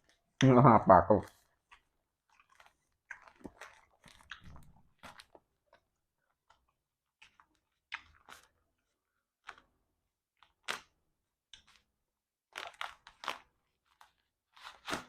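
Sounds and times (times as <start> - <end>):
person chewing and mouth smacks: 1.2 - 9.7.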